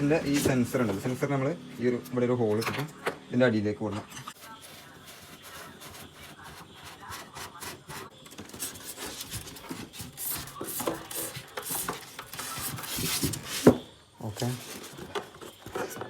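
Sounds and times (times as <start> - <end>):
scraping on polystyrene foam: 4.3 - 16.0.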